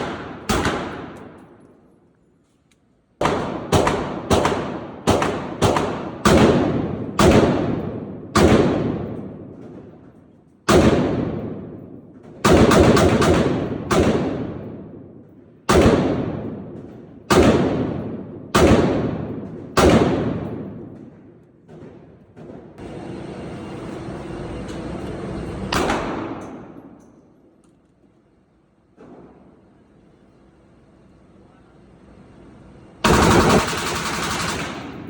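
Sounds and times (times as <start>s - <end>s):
gunshots echoing: 0.0s - 1.9s, 3.2s - 22.9s, 25.7s - 27.0s, 33.0s - 35.0s.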